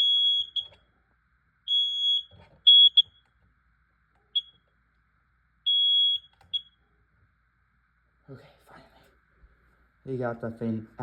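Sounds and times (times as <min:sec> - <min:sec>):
high-pitched alarm beeps: 0:00.0 - 0:00.8, 0:01.7 - 0:03.2, 0:05.7 - 0:06.8.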